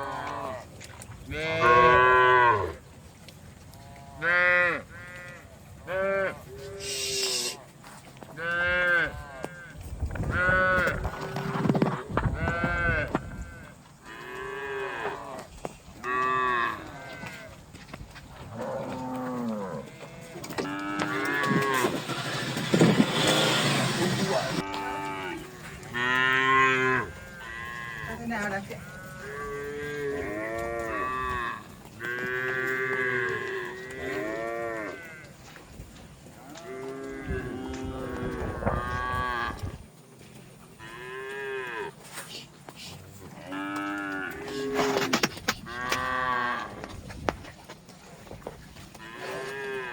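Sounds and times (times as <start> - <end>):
cattle mooing: 1.3 - 2.8, 3.8 - 7.6, 18.5 - 35.3, 36.4 - 39.7, 43.5 - 46.8, 49.0 - 49.9.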